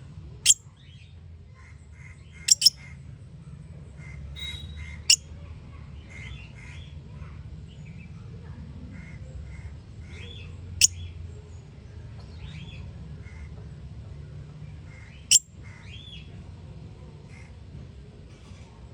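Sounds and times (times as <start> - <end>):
small parrots chirping: 2.5 - 2.8.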